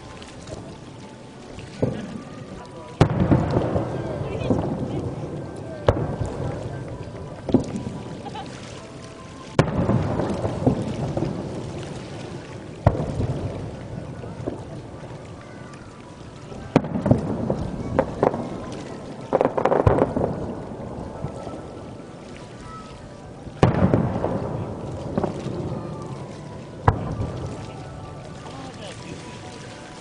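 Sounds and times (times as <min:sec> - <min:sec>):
fireworks pops and crackles: 0:01.7 - 0:22.0, 0:23.5 - 0:28.0
fireworks shells booming: 0:03.0 - 0:05.2, 0:05.8 - 0:07.8, 0:09.5 - 0:14.6, 0:16.7 - 0:18.5, 0:19.1 - 0:21.3, 0:23.6 - 0:25.7.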